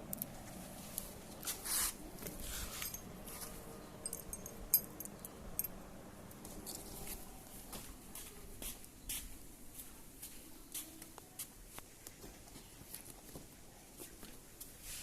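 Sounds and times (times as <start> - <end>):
metal tools clinking: 2.3 - 5.8.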